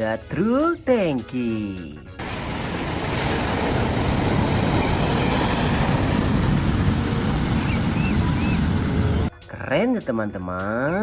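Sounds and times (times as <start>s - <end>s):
heavy truck engine rumble: 2.2s - 9.3s.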